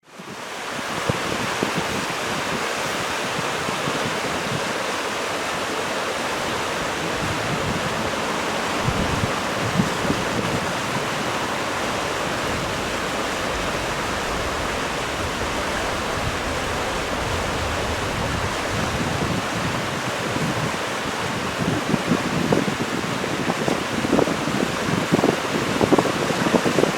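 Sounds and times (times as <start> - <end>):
wind rumbling on microphone: 0.8 - 26.9
heavy rain falling: 4.2 - 22.8.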